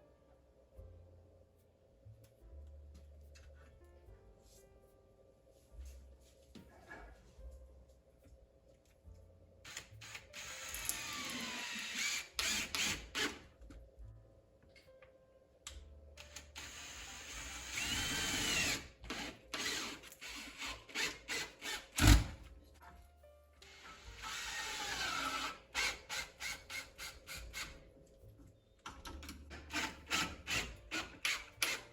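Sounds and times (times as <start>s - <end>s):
power drill running: 9.7s - 13.4s, 16.3s - 22.3s, 23.7s - 27.6s, 29.7s - 31.8s.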